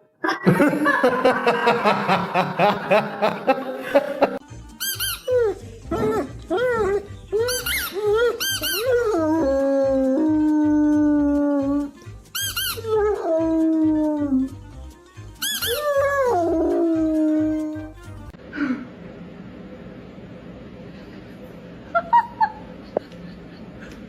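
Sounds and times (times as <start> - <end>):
dog yelping: 5.2 - 10.0, 15.4 - 17.6
dog howling: 5.3 - 11.9, 12.8 - 14.6, 15.6 - 18.0.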